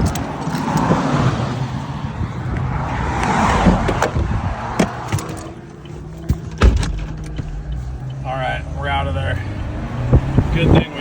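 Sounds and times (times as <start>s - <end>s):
road traffic: 0.0s - 11.0s
vehicle passing by: 0.6s - 6.2s, 7.6s - 11.0s.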